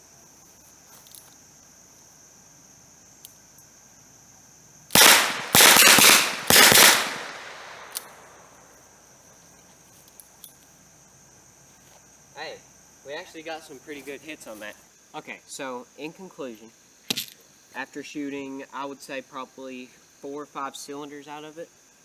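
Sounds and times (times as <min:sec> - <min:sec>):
revolver shots echoing: 0:05.0 - 0:08.5.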